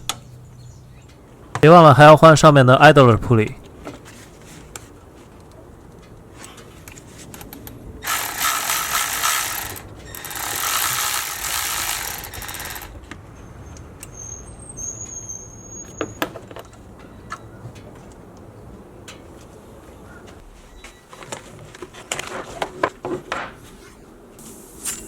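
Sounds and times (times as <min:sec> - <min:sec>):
ratchet wrench clicking: 0:07.4 - 0:13.0.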